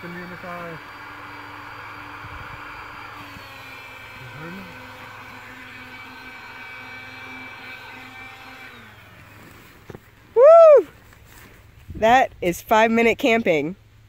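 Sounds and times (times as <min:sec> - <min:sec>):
electric air pump running: 0:00.0 - 0:12.2.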